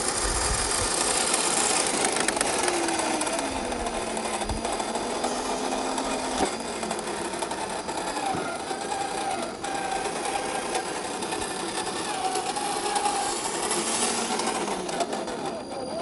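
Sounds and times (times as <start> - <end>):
small electric motor whining: 0.0 - 16.0.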